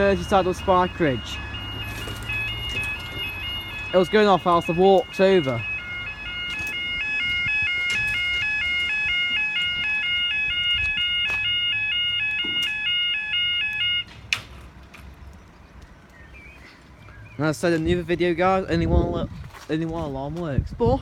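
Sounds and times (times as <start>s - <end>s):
two-tone warning alarm: 0.0s - 14.1s.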